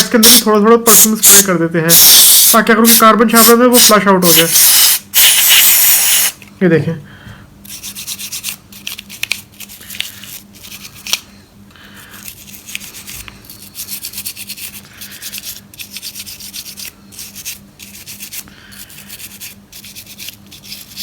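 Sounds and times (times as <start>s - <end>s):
scrubbing a circuit board: 7.7s - 11.2s, 12.2s - 21.0s.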